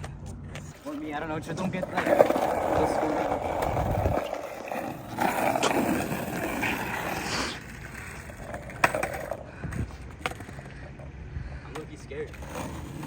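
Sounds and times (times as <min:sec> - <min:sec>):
skateboard wheels rolling on pavement: 0:00.0 - 0:13.0
skateboard clack: 0:01.6 - 0:11.1.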